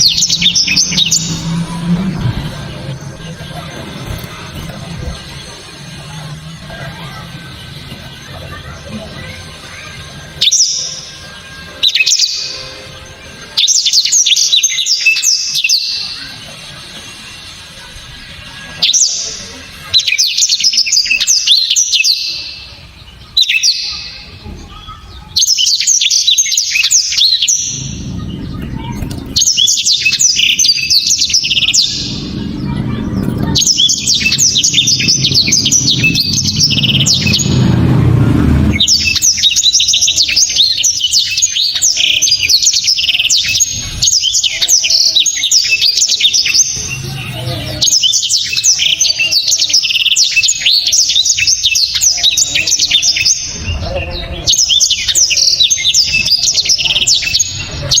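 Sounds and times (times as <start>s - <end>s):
low rumble: 0.0s - 9.2s, 27.5s - 40.1s
bird twittering song: 0.0s - 58.0s.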